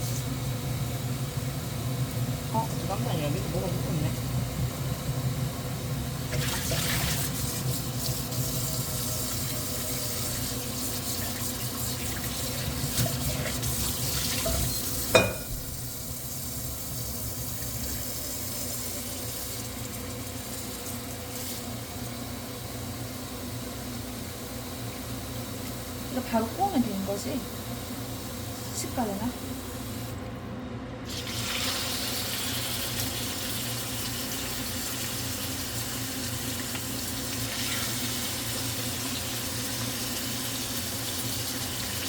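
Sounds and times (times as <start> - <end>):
tap water running into sink: 6.3 - 8.6, 9.3 - 18.2.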